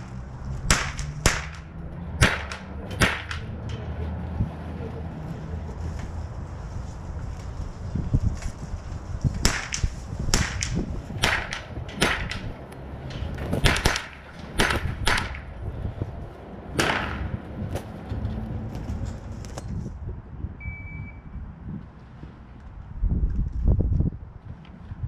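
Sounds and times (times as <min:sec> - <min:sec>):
steady low rumble: 0:00.0 - 0:25.0
rifle shots: 0:00.7 - 0:01.6, 0:09.4 - 0:12.5, 0:13.6 - 0:15.5, 0:16.8 - 0:17.3.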